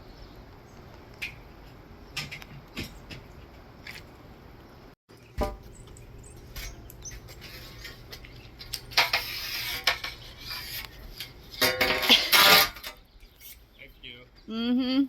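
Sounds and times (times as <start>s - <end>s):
metal hardware clinking and rattling: 11.2s - 13.0s.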